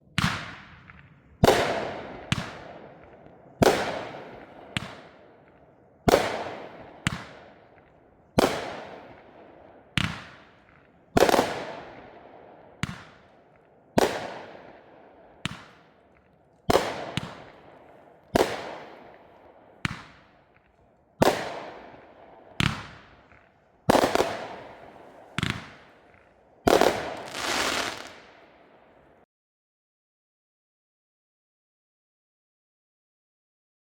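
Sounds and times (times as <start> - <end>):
firework bangs with echo: 0.2 - 28.5
fireworks crackling: 22.6 - 28.4.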